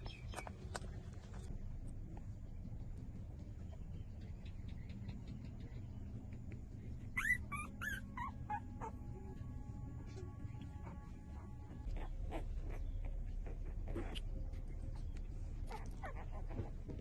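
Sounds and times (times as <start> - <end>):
puppy whimpering: 7.0 - 17.0.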